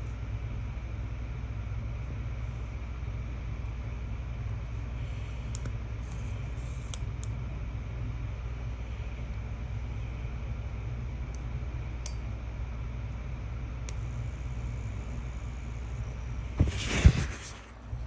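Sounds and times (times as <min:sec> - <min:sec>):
fan humming: 0:13.1 - 0:18.0
brief hiss: 0:15.9 - 0:18.0.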